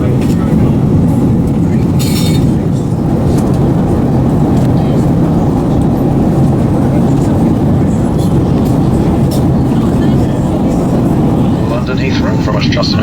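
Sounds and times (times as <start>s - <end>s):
airplane cabin rumble: 0.0s - 13.0s.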